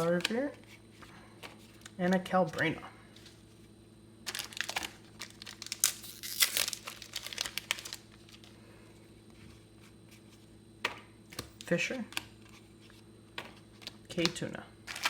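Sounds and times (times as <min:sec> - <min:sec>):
wrapper crinkling and tearing: 0:04.3 - 0:08.5.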